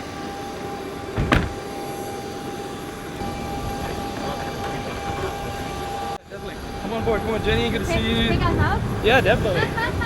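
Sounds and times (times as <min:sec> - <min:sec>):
sharp thump: 0:01.2 - 0:01.6.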